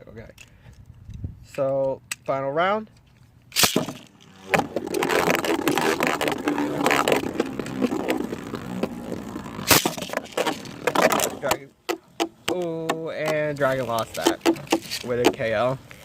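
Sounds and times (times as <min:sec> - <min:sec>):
spinning tops clashing: 0:03.6 - 0:11.5.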